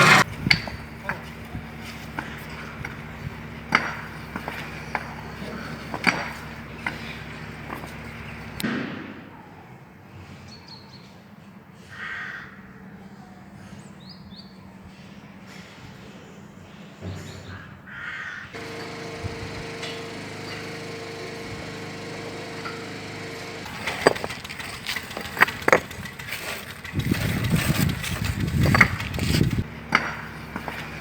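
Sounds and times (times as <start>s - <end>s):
sharp knocks and scrapes: 0.0s - 3.0s, 18.6s - 31.0s
machine engine running: 0.0s - 8.6s, 18.6s - 31.0s
crow cawing: 11.9s - 12.6s, 17.9s - 18.5s.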